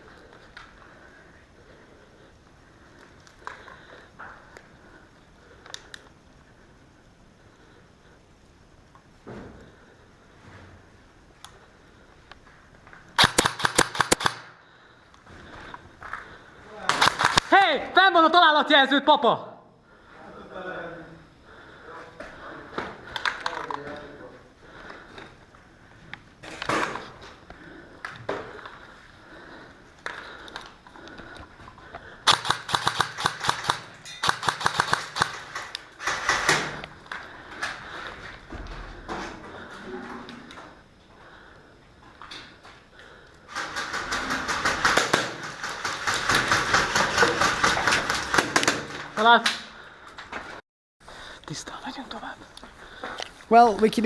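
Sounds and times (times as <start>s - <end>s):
airsoft gun firing rapid shots: 13.2s - 14.5s, 16.9s - 17.6s, 32.2s - 36.8s, 43.5s - 49.0s
airsoft gun shots: 13.2s - 14.5s, 32.3s - 36.8s.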